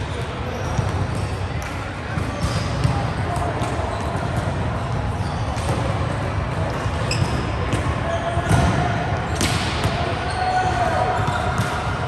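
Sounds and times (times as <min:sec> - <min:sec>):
indoor hall noise: 0:00.0 - 0:12.0
shoe squeaks on court: 0:07.0 - 0:08.6
volleyball hits: 0:07.2 - 0:12.0.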